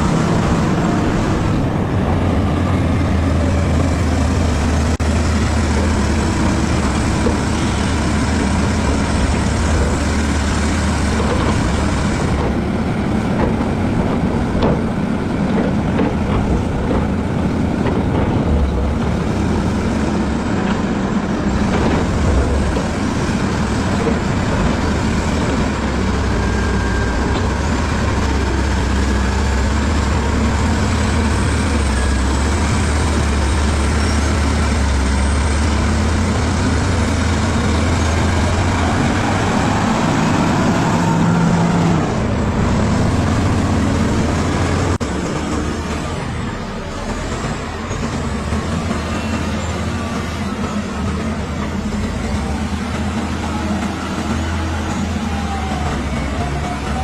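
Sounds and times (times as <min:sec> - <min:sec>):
bulldozer diesel engine droning: 0:00.0 - 0:57.0.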